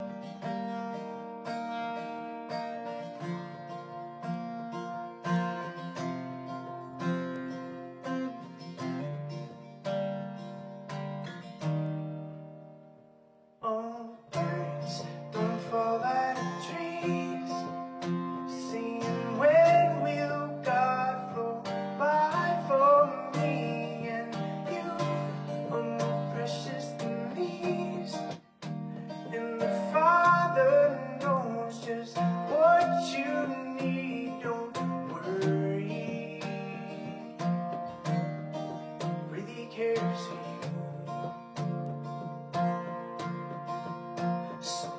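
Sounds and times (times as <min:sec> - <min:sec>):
sliding guitar lead line: 0:00.0 - 0:44.9
strummed acoustic guitar: 0:00.0 - 0:44.9.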